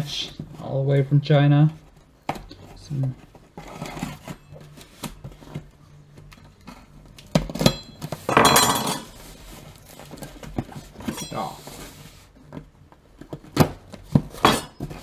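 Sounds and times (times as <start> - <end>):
loud rustling scrape: 3.6 - 5.0
parts knocking and clinking: 7.5 - 9.1.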